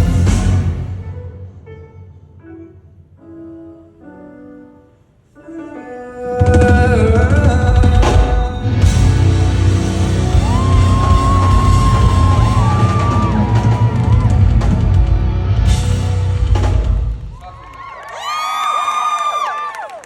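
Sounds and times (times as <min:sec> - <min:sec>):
live pop music with drums and bass: 0:00.0 - 0:01.1, 0:06.4 - 0:17.3
audience cheering and screaming: 0:09.6 - 0:15.6, 0:17.2 - 0:20.0.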